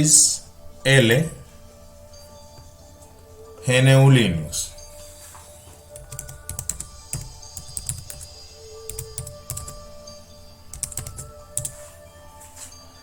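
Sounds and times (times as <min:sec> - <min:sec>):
quiet background music: 0:00.0 - 0:13.0
typing on computer keyboard: 0:05.9 - 0:09.9, 0:10.7 - 0:11.8.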